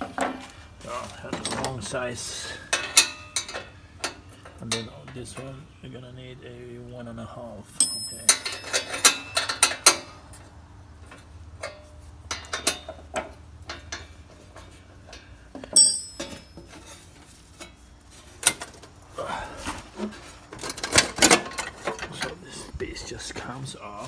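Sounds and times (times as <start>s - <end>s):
metal tools clinking and clattering: 0.0s - 5.6s, 7.8s - 10.5s, 11.1s - 18.9s, 19.6s - 22.6s
loud ringing metallic clink: 7.8s - 10.2s, 15.7s - 16.7s.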